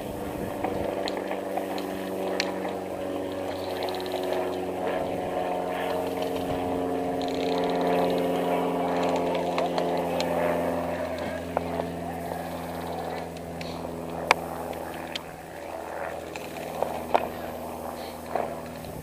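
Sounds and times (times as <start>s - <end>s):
motor running steadily: 0.0s - 19.0s
faint clicks: 0.6s - 2.8s, 3.5s - 4.6s, 7.1s - 8.3s.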